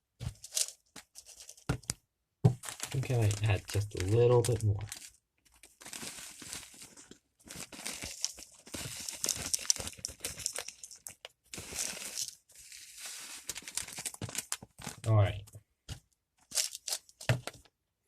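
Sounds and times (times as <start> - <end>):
plastic bag crinkling: 2.6 - 15.1.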